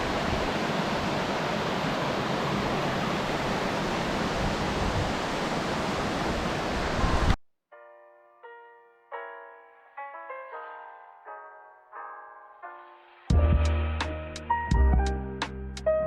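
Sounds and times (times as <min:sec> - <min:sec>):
waterfall rushing: 0:00.0 - 0:07.4
wind on microphone: 0:02.7 - 0:07.4
slow piano notes: 0:07.7 - 0:16.0.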